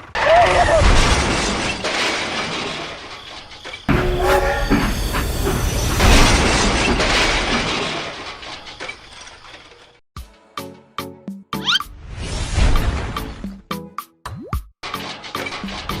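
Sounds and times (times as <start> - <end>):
train horn blast: 3.9 - 7.7
train rumbling: 3.9 - 9.4.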